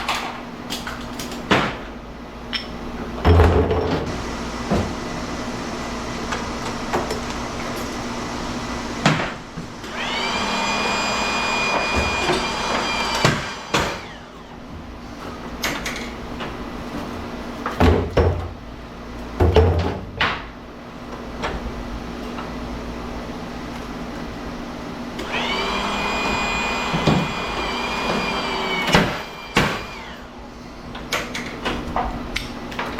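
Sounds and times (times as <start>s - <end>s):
power tool whining: 4.1s - 14.7s, 25.2s - 30.4s
steady hum: 4.1s - 15.2s.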